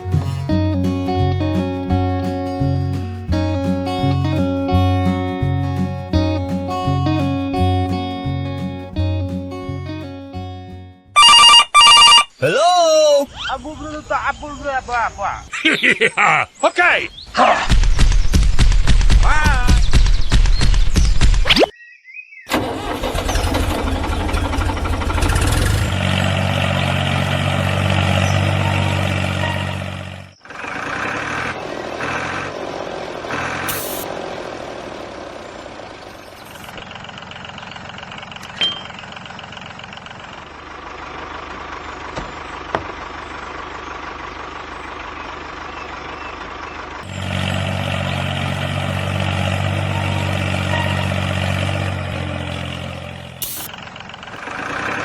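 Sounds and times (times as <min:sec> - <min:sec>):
model tractor motor droning: 0:22.5 - 0:55.0.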